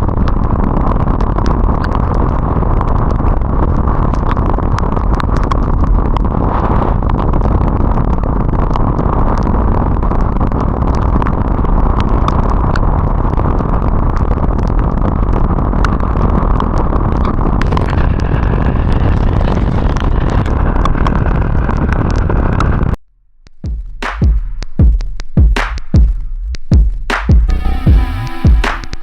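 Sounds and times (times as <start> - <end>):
wind and road noise: 0.0 - 23.0.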